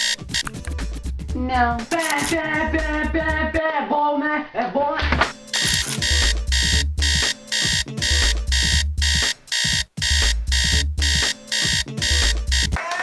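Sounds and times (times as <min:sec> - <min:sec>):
alarm clock beeping: 0:00.0 - 0:00.5, 0:05.6 - 0:12.8.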